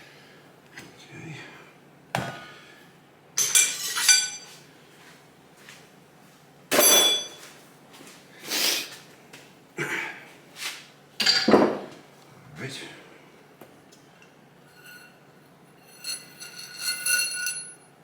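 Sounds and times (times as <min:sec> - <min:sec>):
metal parts clinking: 0:03.4 - 0:04.5, 0:15.9 - 0:17.8
soft scrapes and handling: 0:14.7 - 0:17.8.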